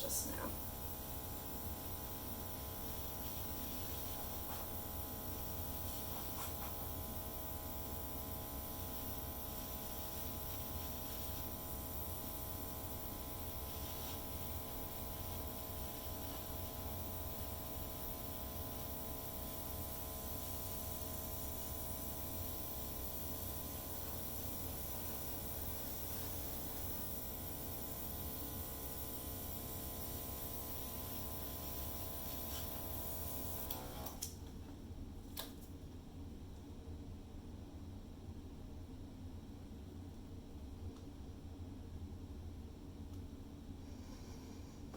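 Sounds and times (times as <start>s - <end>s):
airbrush compressor motor hum: 0.0s - 34.2s
faint hiss of air: 0.0s - 34.3s, 43.7s - 44.9s.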